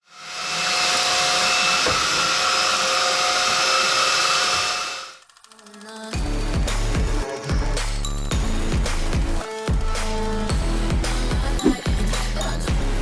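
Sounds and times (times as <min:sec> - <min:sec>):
background music: 0:05.5 - 0:13.0.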